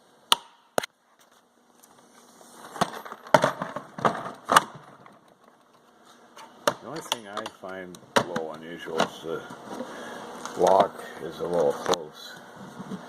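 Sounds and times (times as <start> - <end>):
rolling tool box rattling: 2.6 - 5.7.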